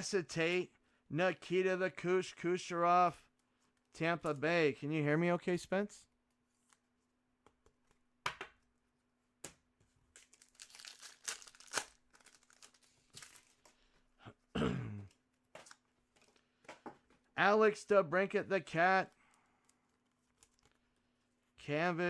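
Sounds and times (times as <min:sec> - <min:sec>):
cards crackling and clicking: 0:09.4 - 0:13.8, 0:19.0 - 0:21.0
wrapper tearing and crinkling: 0:10.2 - 0:13.7.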